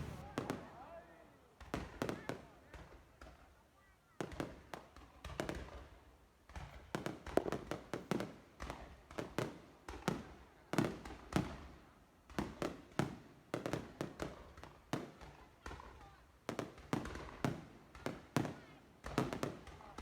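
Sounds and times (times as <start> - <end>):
fireworks bangs echoing: 0.0 - 0.8.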